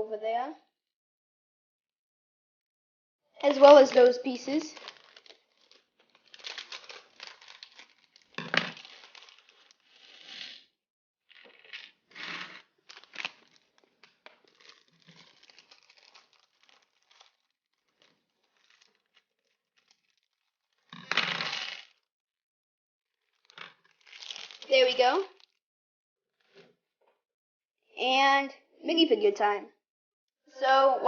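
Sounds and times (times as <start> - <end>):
plastic bags crinkling and tearing: 3.4 - 10.4, 11.3 - 22.0, 23.3 - 25.6.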